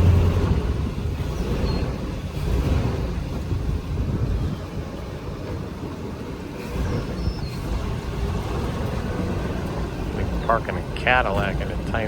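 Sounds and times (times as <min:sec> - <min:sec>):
boat engine rumbling: 0:00.0 - 0:12.0.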